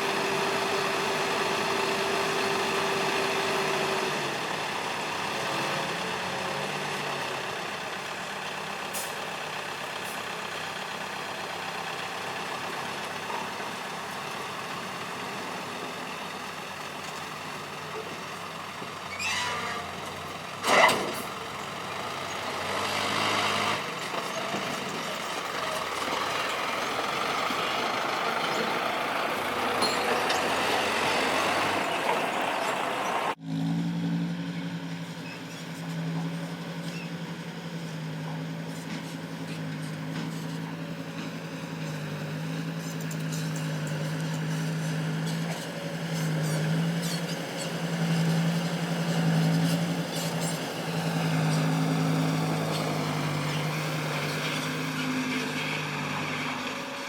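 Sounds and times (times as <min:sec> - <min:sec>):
heavy diesel machinery running: 0:00.0 - 0:57.0
low engine hum: 0:25.8 - 0:57.0.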